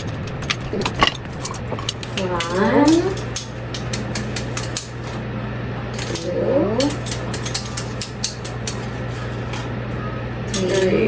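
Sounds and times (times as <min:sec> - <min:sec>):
steady low hum: 0:00.0 - 0:11.0
measuring spoon clicking and scraping: 0:01.0 - 0:05.2, 0:05.9 - 0:09.8, 0:10.5 - 0:11.0.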